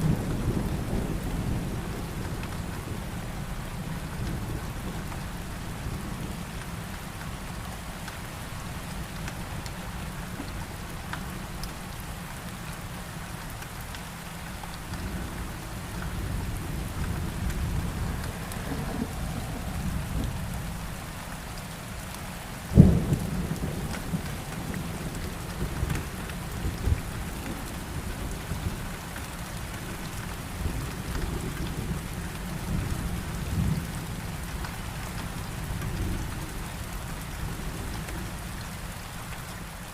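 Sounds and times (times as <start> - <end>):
low rolling thunder: 0.0 - 6.5, 14.8 - 21.7, 22.7 - 34.8
steady rain: 0.0 - 39.9.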